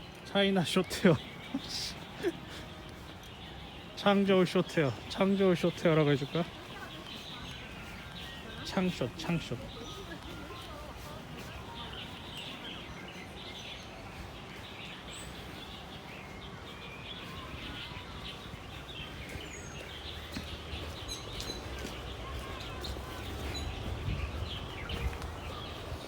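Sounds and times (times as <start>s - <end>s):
outdoor background noise: 0.0s - 26.0s
small birds chirping: 0.0s - 26.0s.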